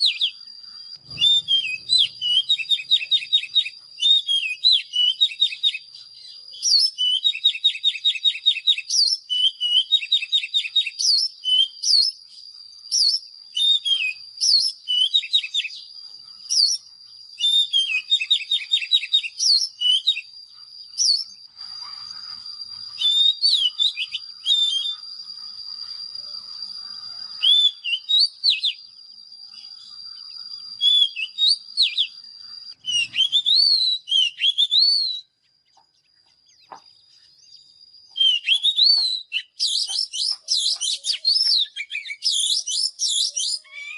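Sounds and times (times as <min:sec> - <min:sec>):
bird singing whistled notes and trills: 0:00.0 - 0:43.9
steady high-pitched tone: 0:20.2 - 0:30.8.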